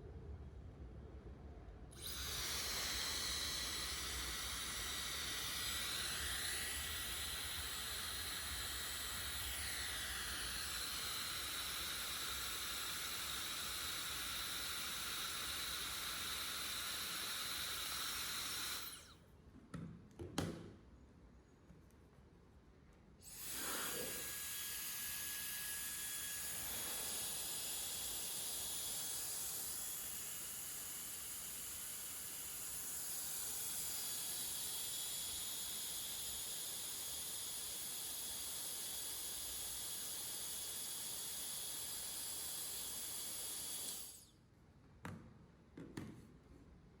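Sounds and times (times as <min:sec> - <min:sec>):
hair dryer blowing: 0:02.0 - 0:19.2, 0:23.2 - 0:44.3
small knocks: 0:45.0 - 0:46.2.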